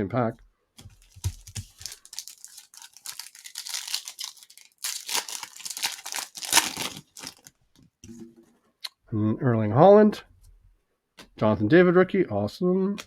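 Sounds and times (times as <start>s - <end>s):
wrapper tearing and crinkling: 0.9s - 7.6s.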